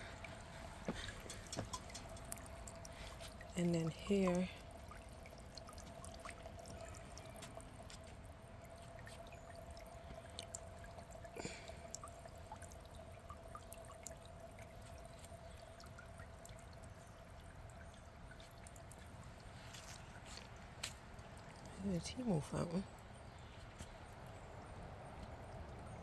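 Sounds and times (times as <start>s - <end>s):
faint steady hum: 0.0s - 26.0s
fountain water trickling and dripping: 0.0s - 26.0s.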